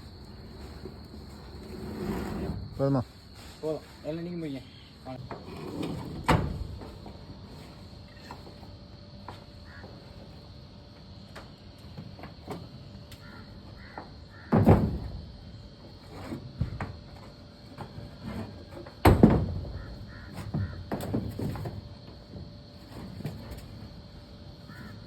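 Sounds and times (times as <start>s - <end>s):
crows cawing: 9.6s - 9.9s, 13.2s - 14.5s, 19.8s - 20.9s, 24.7s - 25.0s.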